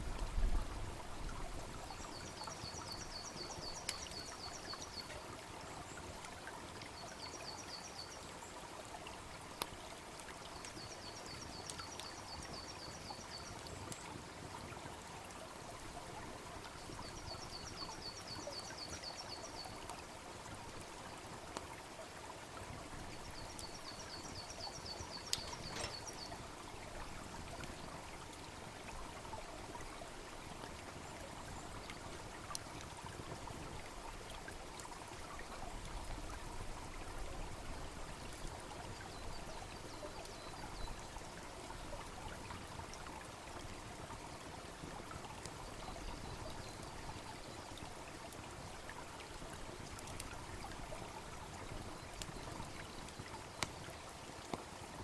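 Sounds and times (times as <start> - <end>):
brook babbling: 0.0 - 55.0
burning wood popping: 25.2 - 26.2.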